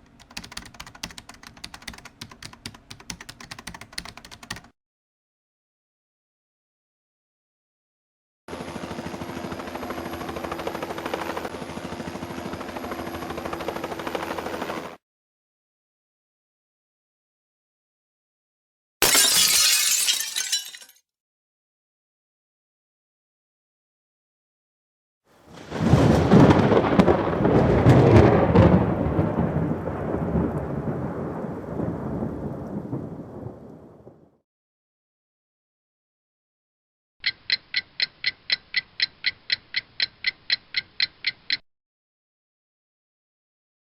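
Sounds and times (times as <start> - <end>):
thunder clap and rumble: 25.5 - 34.4.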